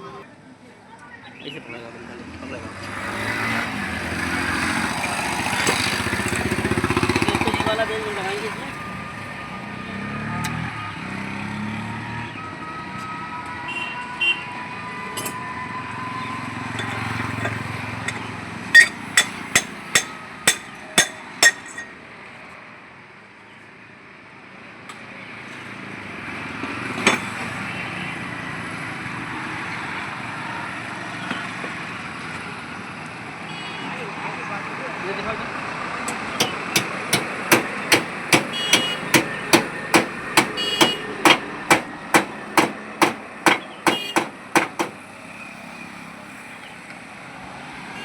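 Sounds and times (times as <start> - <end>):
hammer striking metal: 15.2 - 15.4, 16.8 - 22.0, 27.0 - 27.5, 36.1 - 45.0.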